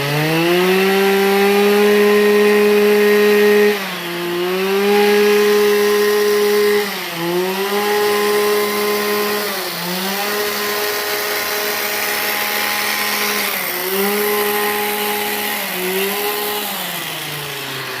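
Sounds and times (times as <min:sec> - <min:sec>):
small petrol engine cutting shrub: 0:00.0 - 0:18.0.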